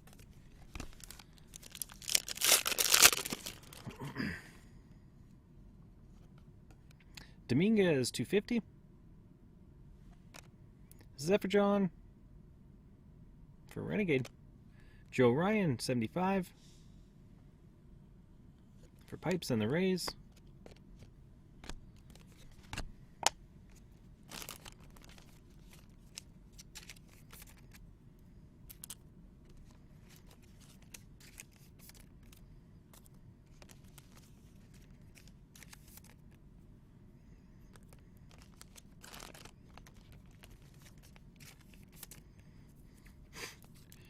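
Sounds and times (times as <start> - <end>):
card wrappers crinkling: 0.0 - 3.9, 23.7 - 27.8, 28.7 - 36.4, 37.7 - 42.3.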